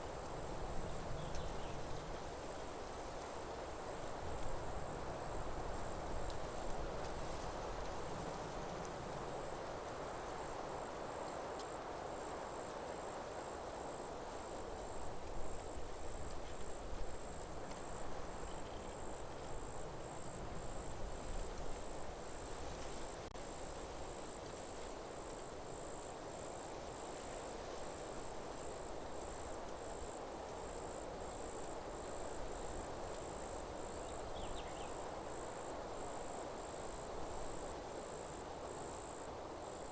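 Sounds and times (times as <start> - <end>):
crickets trilling: 13.9 - 22.6, 23.6 - 39.9.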